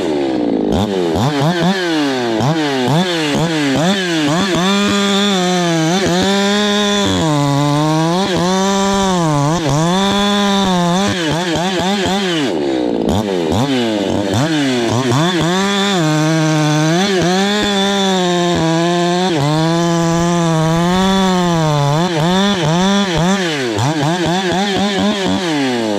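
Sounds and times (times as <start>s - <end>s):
chainsaw cutting wood: 0.0s - 25.9s.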